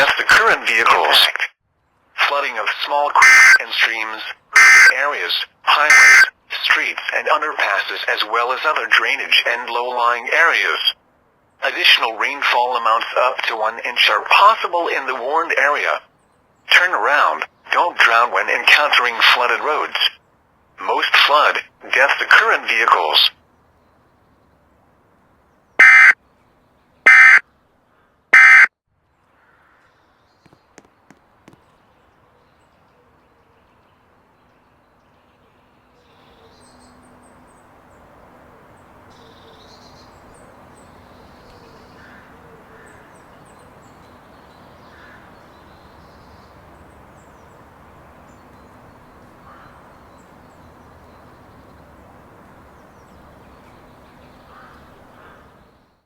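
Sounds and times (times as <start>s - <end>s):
scattered calls: 3.1s - 6.4s, 25.8s - 26.2s, 27.1s - 27.4s, 28.4s - 28.7s, 36.4s - 55.8s
digital data tone bursts: 3.2s - 3.6s, 4.6s - 4.9s, 5.9s - 6.3s, 25.8s - 26.2s, 27.1s - 27.4s, 28.4s - 28.7s.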